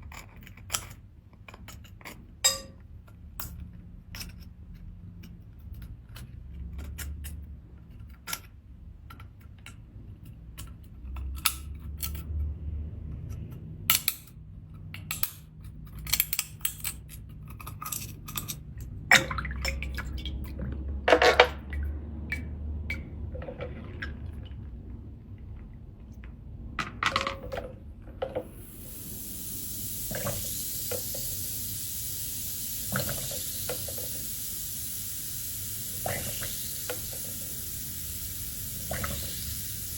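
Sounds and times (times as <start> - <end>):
steady high hiss: 28.5 - 39.9.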